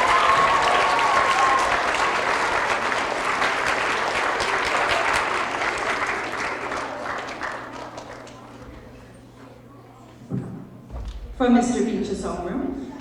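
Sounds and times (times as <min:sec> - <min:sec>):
children clapping: 0:00.0 - 0:08.8.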